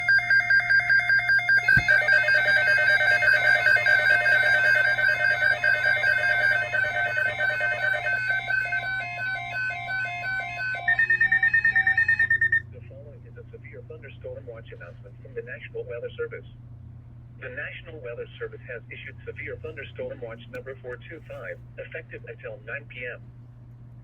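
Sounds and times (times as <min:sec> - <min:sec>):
electronic alarm beeping: 0:00.0 - 0:12.7.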